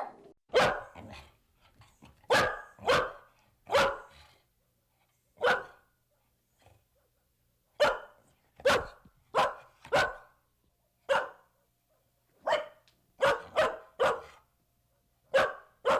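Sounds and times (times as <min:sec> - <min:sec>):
dog barking: 0:00.0 - 0:01.3, 0:02.3 - 0:04.3, 0:05.4 - 0:05.9, 0:07.8 - 0:10.4, 0:11.0 - 0:11.6, 0:12.4 - 0:14.4, 0:15.3 - 0:15.9.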